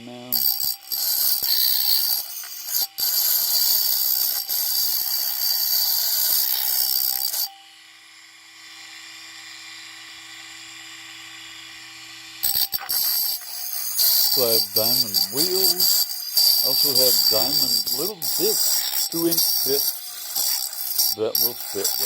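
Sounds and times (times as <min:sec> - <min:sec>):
high-pitched rasping hiss: 0:12.7 - 0:22.0.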